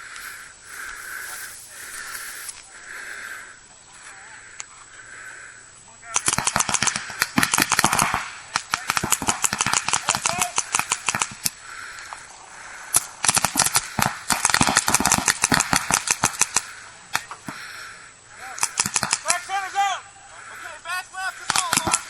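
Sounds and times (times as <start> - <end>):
paintball markers firing: 6.1 - 12.3, 12.9 - 19.6, 21.3 - 22.0.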